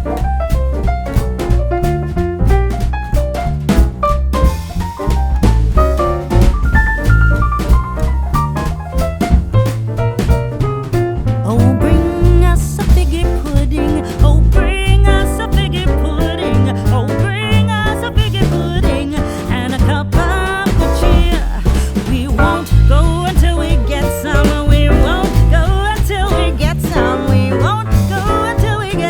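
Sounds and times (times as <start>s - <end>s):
bass and steady beat: 0.0s - 29.0s
person singing: 11.5s - 29.0s.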